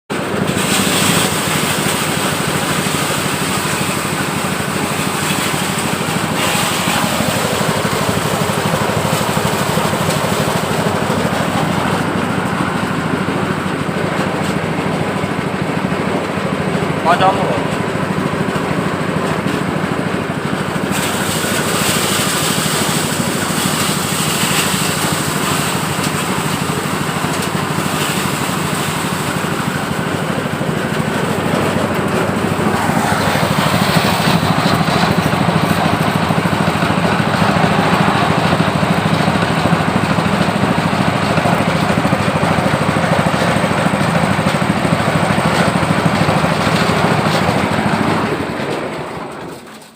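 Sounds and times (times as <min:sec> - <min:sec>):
thresher engine drone: 0:00.1 - 0:49.9
threshing drum rushing noise: 0:27.4 - 0:49.4.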